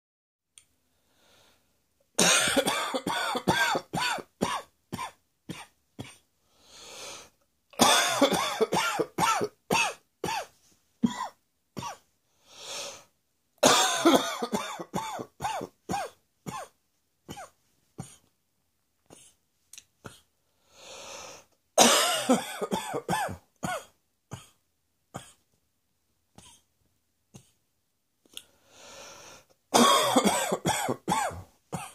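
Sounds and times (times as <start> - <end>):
long in-breath: 0.9 - 1.8, 6.4 - 7.4, 12.3 - 13.1, 20.4 - 21.6, 28.4 - 29.6
person coughing: 2.2 - 6.2, 7.8 - 12.0, 13.6 - 18.3, 21.8 - 24.6, 29.7 - 31.9.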